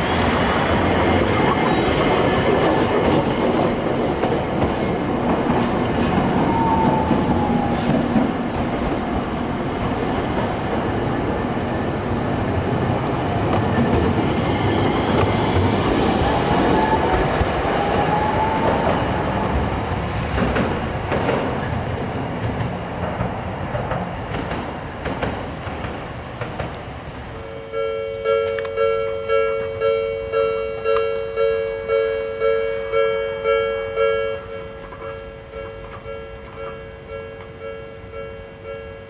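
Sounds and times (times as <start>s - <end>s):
tram running past: 0.0s - 39.0s
level-crossing warning bell: 27.4s - 39.0s.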